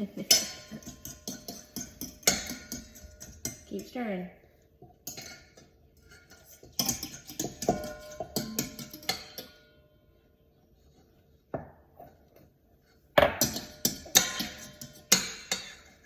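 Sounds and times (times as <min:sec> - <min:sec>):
fork scraping mixing bowl: 0:00.6 - 0:03.8, 0:05.1 - 0:09.5, 0:13.5 - 0:16.0.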